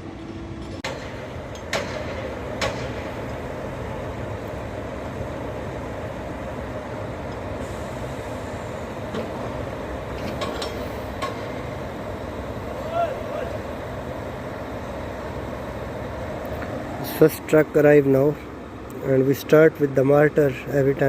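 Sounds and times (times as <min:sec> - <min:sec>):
diesel engine running: 0:00.0 - 0:21.0
sharp metallic knocks: 0:00.8 - 0:03.2.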